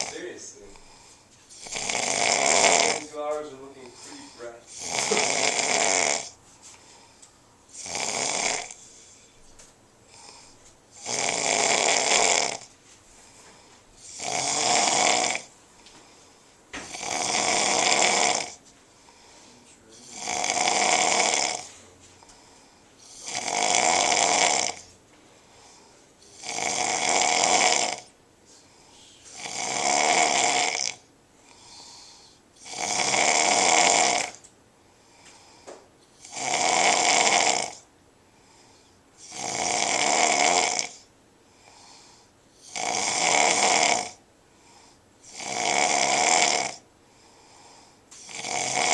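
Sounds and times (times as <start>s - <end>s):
man snoring loudly: 0.0s - 0.7s, 1.5s - 6.4s, 7.7s - 9.1s, 10.1s - 12.7s, 14.0s - 15.5s, 16.9s - 18.6s, 19.9s - 21.8s, 23.0s - 24.9s, 25.6s - 28.1s, 29.3s - 34.4s, 36.2s - 37.9s, 39.2s - 44.2s, 45.2s - 46.8s, 47.5s - 48.9s
faint breaths: 0.0s - 5.6s, 6.3s - 11.4s, 12.5s - 14.6s, 15.3s - 20.7s, 21.3s - 23.6s, 24.6s - 26.5s, 28.0s - 29.6s, 31.3s - 32.8s, 34.3s - 36.3s, 37.8s - 39.4s, 40.9s - 42.8s, 44.4s - 45.4s, 46.8s - 48.6s.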